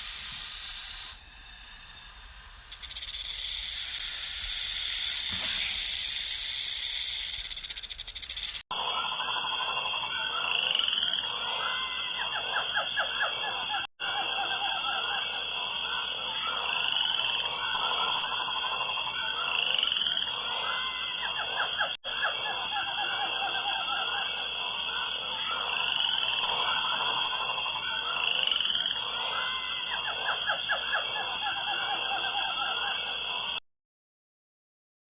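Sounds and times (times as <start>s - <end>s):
high-pitched drone: 0.0s - 8.6s
loud steady hiss: 0.0s - 8.6s
rapid repeating animal calls: 0.0s - 8.6s.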